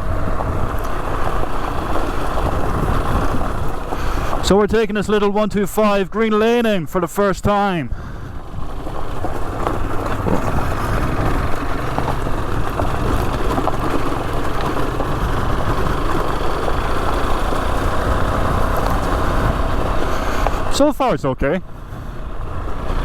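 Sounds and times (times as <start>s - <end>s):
motorcycle engine running: 0.0s - 5.2s, 7.9s - 23.0s
wind noise: 0.0s - 5.4s, 7.8s - 20.8s.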